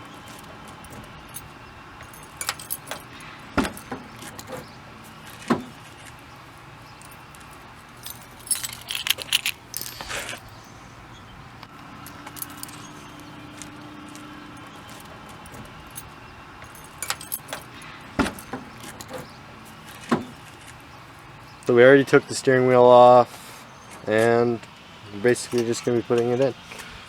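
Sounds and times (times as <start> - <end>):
metal jangling: 0.2 - 6.1, 6.9 - 10.8, 12.0 - 20.4
metal tools clinking: 0.2 - 6.2, 6.9 - 10.8, 12.0 - 20.4.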